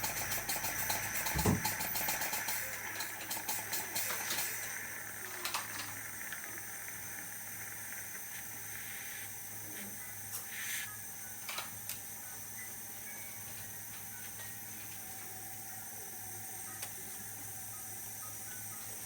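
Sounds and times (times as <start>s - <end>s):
faint high whine: 4.0s - 19.0s
dental suction hissing: 8.2s - 9.4s.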